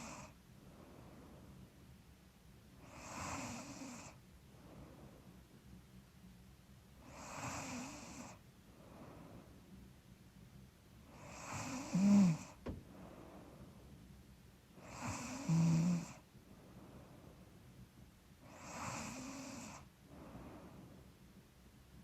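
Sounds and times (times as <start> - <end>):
woman snoring: 2.8 - 4.2, 7.1 - 8.4, 11.2 - 12.6, 14.8 - 16.2, 18.5 - 19.8.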